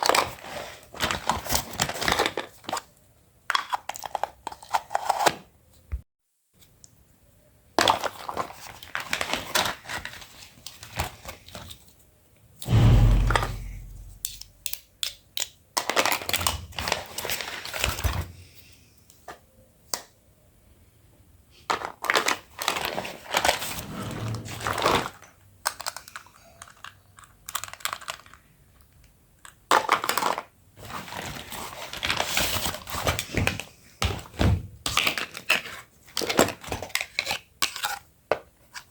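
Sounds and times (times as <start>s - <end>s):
heavy thump: 12.6s - 14.3s
plastic toy pieces clicking: 25.6s - 30.4s.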